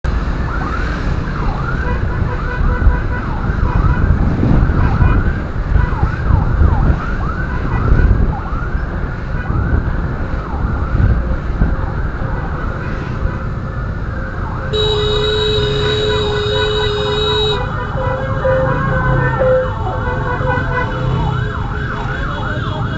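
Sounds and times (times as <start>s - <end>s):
ambulance siren yelping: 0.3s - 12.8s, 13.6s - 22.9s.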